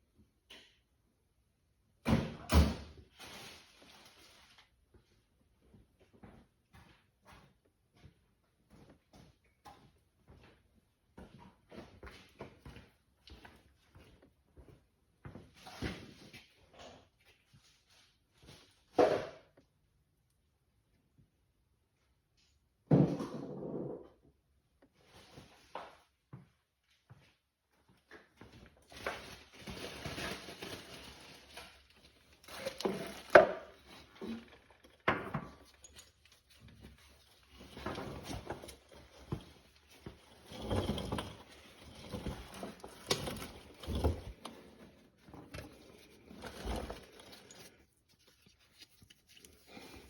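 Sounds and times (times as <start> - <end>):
tools clattering and scraping: 31.6 - 50.0.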